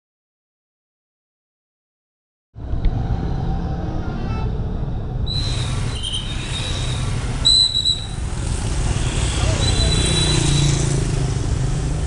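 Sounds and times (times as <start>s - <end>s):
bus engines rumbling: 2.6s - 12.0s
shrill whistle-like tone: 5.2s - 8.2s, 9.6s - 10.7s.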